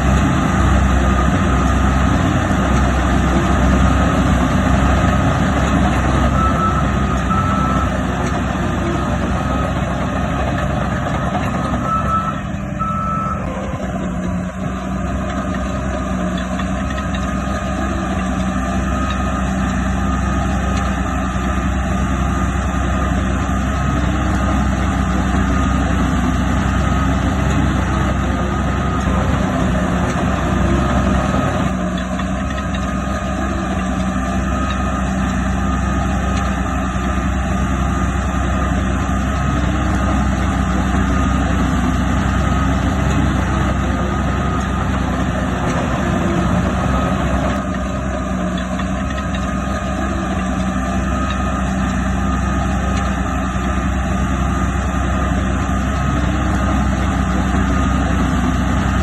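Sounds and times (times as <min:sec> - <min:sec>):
heavy diesel machinery running: 0:00.0 - 0:59.0
backup alarm beeping: 0:11.6 - 0:13.9.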